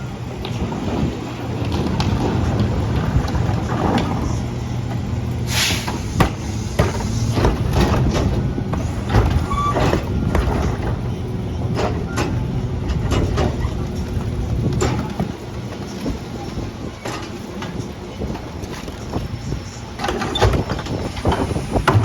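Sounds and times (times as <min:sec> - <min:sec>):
truck engine drone: 0:00.0 - 0:22.0
air hiss: 0:05.5 - 0:07.4
knocks and clanks: 0:05.8 - 0:16.2, 0:20.0 - 0:22.0.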